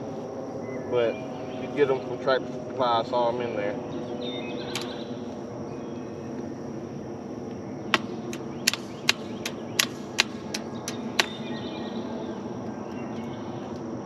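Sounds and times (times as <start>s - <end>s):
low background hum: 0.0s - 14.0s
sharp metal clicks: 4.8s - 5.0s, 8.0s - 11.4s.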